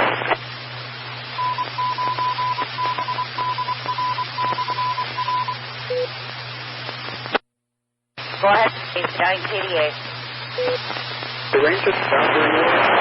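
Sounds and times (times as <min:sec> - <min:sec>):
radio hiss and static clicks: 0:00.0 - 0:07.5, 0:08.2 - 0:13.0
morse code beeps: 0:01.4 - 0:06.1, 0:10.6 - 0:10.8.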